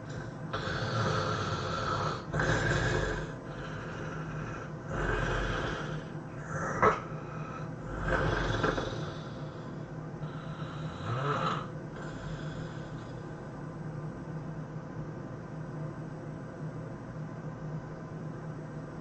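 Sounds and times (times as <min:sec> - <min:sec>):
person snoring heavily: 0:00.0 - 0:13.2
sharp snort: 0:00.6 - 0:09.4.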